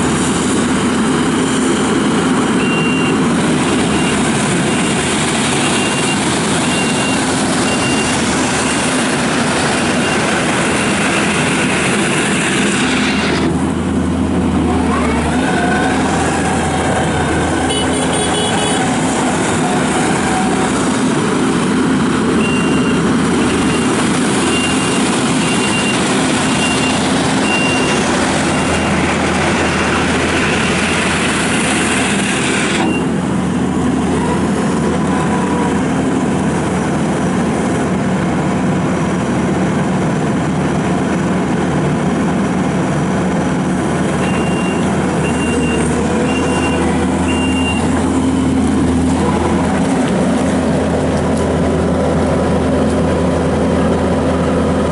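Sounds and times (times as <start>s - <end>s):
diesel engine running: 0.0s - 54.9s
backup alarm beeping: 2.6s - 3.2s, 22.4s - 29.0s, 44.2s - 48.6s.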